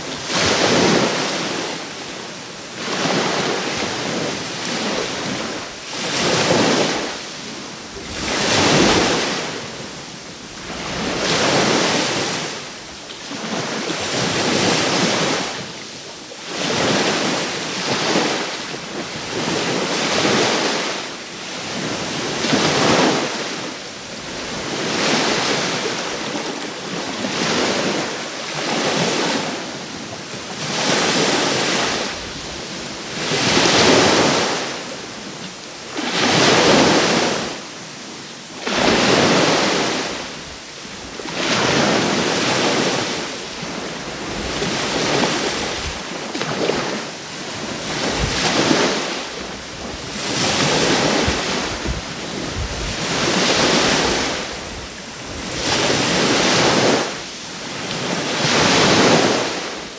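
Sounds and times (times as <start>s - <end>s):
sea waves breaking on shore: 0.0s - 59.9s
wind on microphone: 38.7s - 59.6s.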